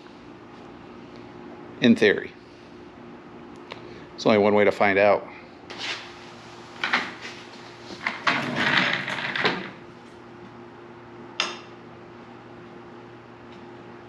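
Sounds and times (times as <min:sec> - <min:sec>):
faint steady hum: 0:00.0 - 0:14.0
metal parts clanking and scraping: 0:08.0 - 0:09.7.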